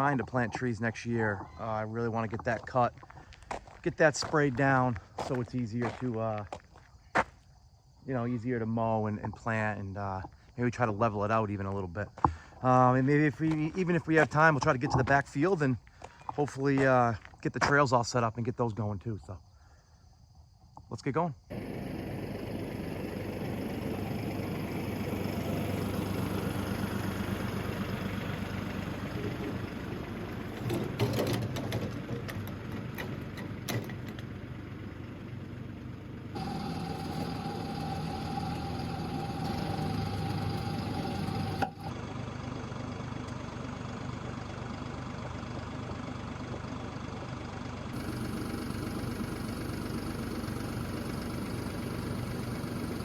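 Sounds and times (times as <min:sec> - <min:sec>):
tractor engine running: 0:00.0 - 0:18.0, 0:21.5 - 0:53.0
steady high tone: 0:36.4 - 0:41.9.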